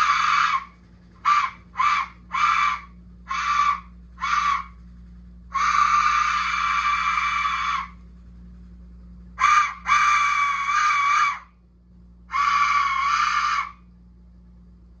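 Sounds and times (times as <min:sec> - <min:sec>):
whistle shrieking: 0:00.0 - 0:04.8, 0:05.5 - 0:08.0, 0:09.4 - 0:11.5, 0:12.3 - 0:13.9.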